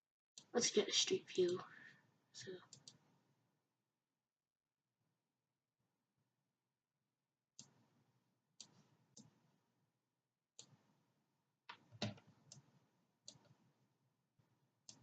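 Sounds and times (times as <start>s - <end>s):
computer mouse clicking: 2.7s - 3.1s, 8.6s - 9.4s, 10.6s - 10.8s, 11.7s - 13.7s.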